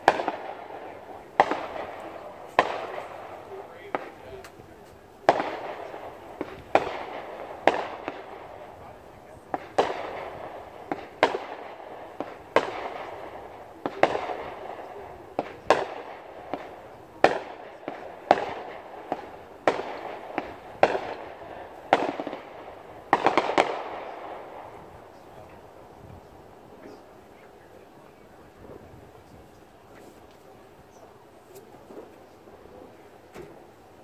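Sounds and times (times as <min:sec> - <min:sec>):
fireworks bursting with echo: 0:00.0 - 0:34.0.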